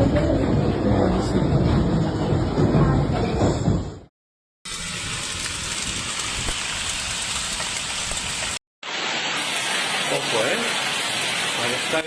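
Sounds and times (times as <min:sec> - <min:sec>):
heavy rain on hard surfaces: 0:04.7 - 0:12.0.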